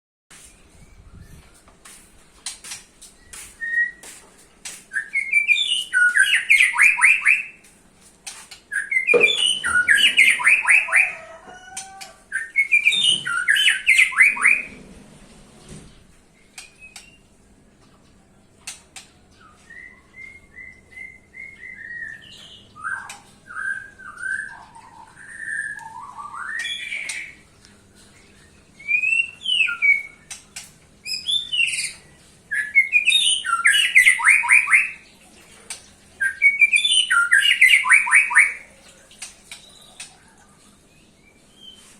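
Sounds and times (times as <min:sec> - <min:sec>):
whistled bird notes and calls: 0:03.2 - 0:04.2, 0:04.9 - 0:07.6, 0:08.7 - 0:14.8, 0:16.4 - 0:17.4, 0:19.3 - 0:27.5, 0:28.2 - 0:35.1, 0:36.2 - 0:38.8, 0:39.5 - 0:41.9
bird singing rattling phrases: 0:08.7 - 0:11.2, 0:28.3 - 0:35.2, 0:36.0 - 0:41.9.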